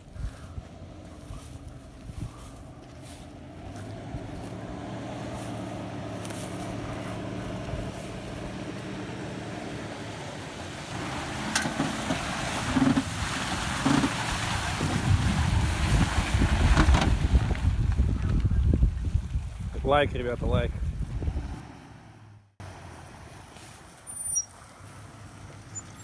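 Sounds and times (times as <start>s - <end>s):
car engine running: 0.1s - 15.6s.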